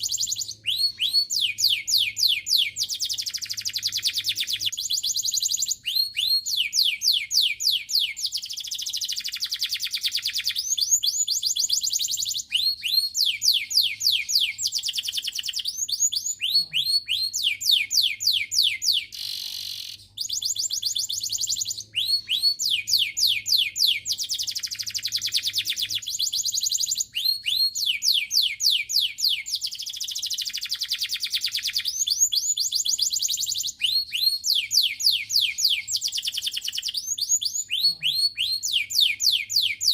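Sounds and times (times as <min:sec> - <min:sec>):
canary singing trills: 0:00.0 - 0:39.9.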